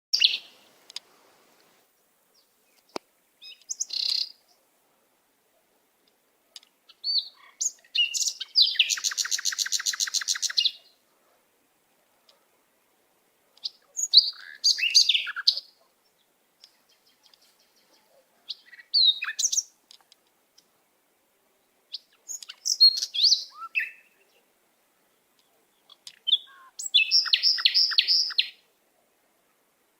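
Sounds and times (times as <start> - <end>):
bird singing chirps and whistles: 7.0 - 10.8, 14.0 - 15.6, 18.5 - 19.7, 21.9 - 24.2, 26.2 - 28.6.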